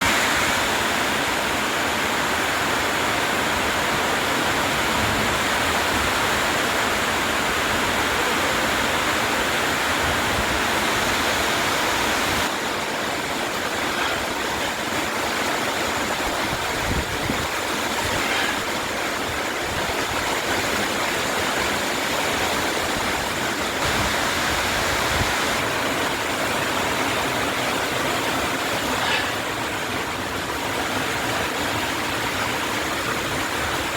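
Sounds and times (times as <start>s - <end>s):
heavy rain falling: 0.0s - 33.9s.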